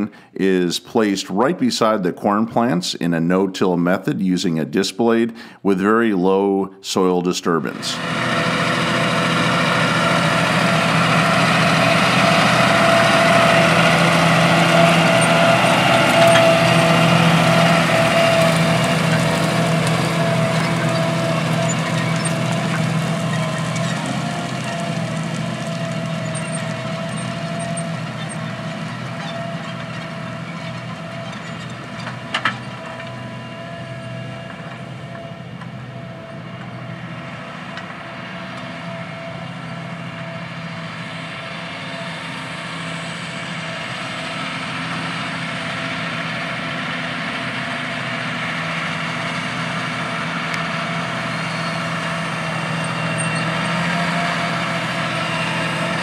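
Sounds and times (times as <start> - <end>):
diesel engine running: 7.5 - 56.0.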